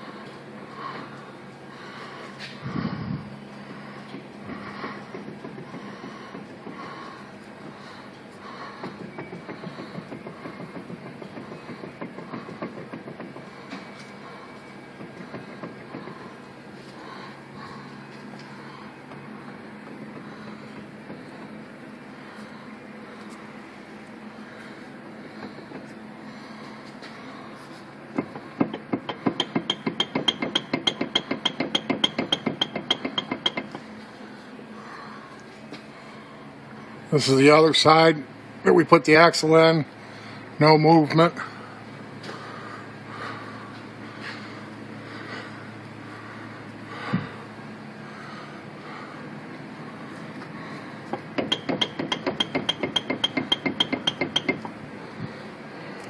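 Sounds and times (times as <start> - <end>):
rapid metallic knocking: 4.1 - 8.0, 8.6 - 13.6, 14.9 - 16.3, 28.1 - 33.8, 51.1 - 54.8.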